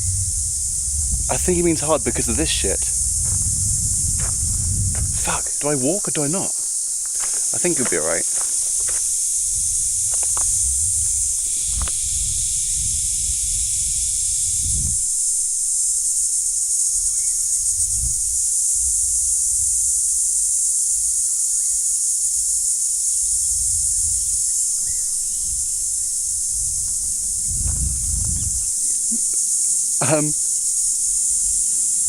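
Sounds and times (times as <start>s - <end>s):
rumbling bumps on microphone: 0.0s - 5.6s, 26.6s - 28.7s
lower insect layer: 0.0s - 32.0s
shrill insect drone: 0.0s - 32.0s.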